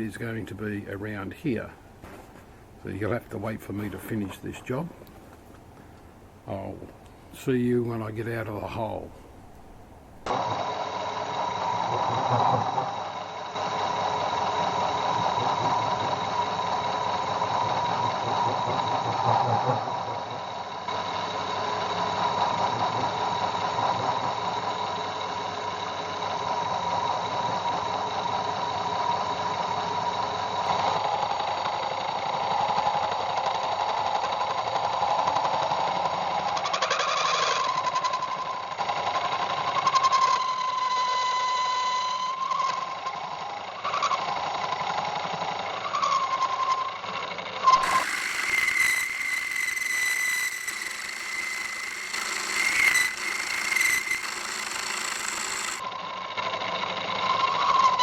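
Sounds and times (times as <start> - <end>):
metal lathe machining: 47.6 - 55.9
high-pitched whine: 47.6 - 56.2.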